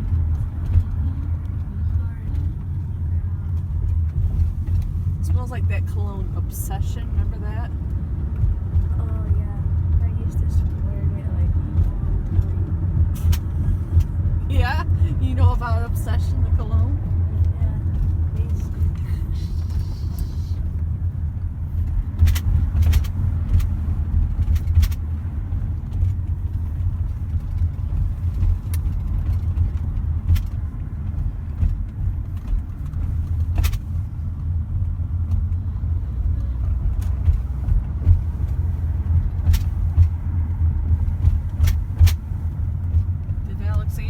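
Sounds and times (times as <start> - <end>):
car engine and tyre rumble: 0.0 - 44.0.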